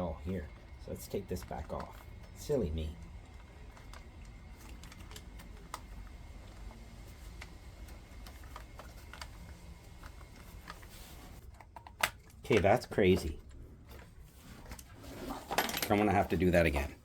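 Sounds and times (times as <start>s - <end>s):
low steady hum: 0.0s - 17.0s
small parts clicking and tapping: 0.3s - 6.8s.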